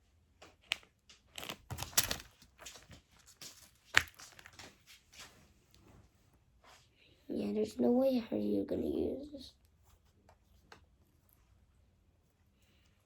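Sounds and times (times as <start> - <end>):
toy handling clicks and crinkles: 0.5 - 4.8.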